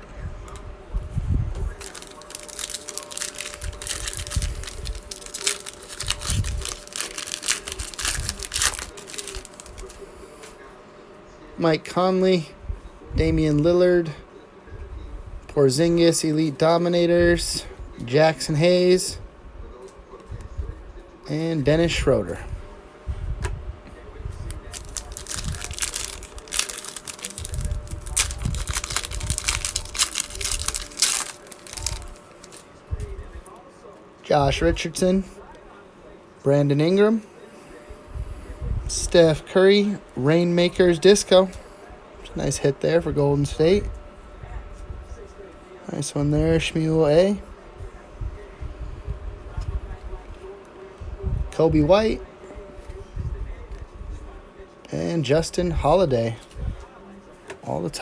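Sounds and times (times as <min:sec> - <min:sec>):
foil wrapper crinkling and tearing: 0:01.7 - 0:10.0, 0:24.5 - 0:32.6
cards shuffling: 0:01.8 - 0:10.0, 0:24.5 - 0:32.6.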